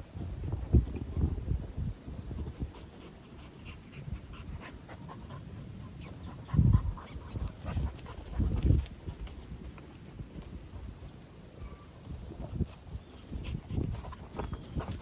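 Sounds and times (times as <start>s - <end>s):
animal heavy breaths: 2.3s - 9.3s.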